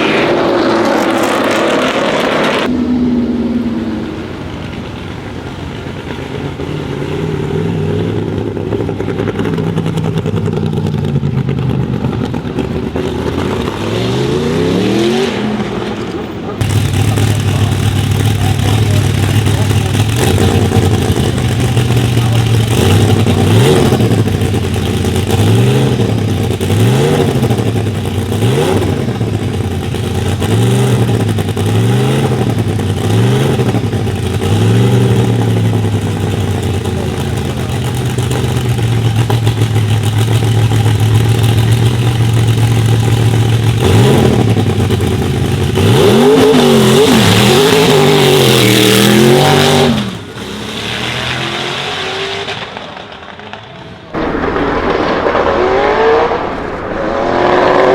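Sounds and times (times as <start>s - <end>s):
car engine idling: 16.2s - 28.4s, 33.6s - 45.8s, 54.2s - 57.9s
engine throttle blips: 54.2s - 57.9s.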